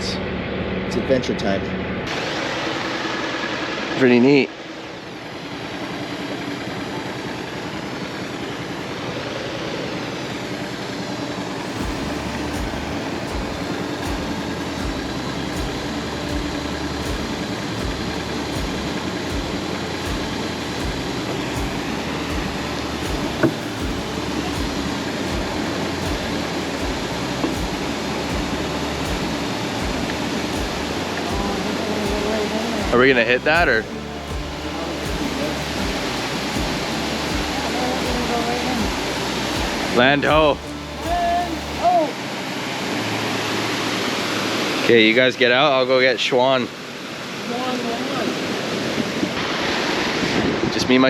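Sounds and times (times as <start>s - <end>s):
small boat motor running: 0.0s - 44.9s
low thudding: 11.8s - 41.8s.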